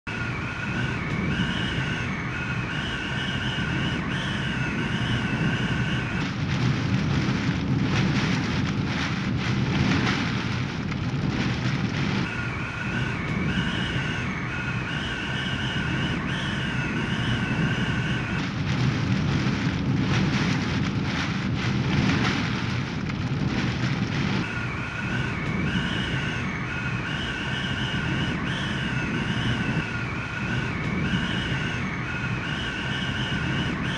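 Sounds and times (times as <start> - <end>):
wavering high whistle: 0.1 - 6.2, 12.2 - 18.4, 24.4 - 33.9
heavy rain: 0.1 - 33.9
hurricane wind: 0.1 - 33.9.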